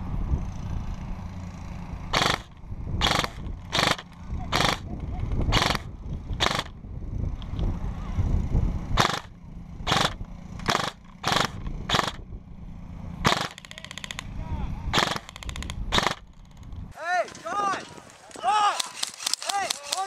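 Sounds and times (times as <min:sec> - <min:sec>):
airsoft gun shots: 0:02.1 - 0:04.9, 0:09.0 - 0:09.3, 0:09.9 - 0:12.2, 0:13.2 - 0:14.3, 0:14.9 - 0:16.2.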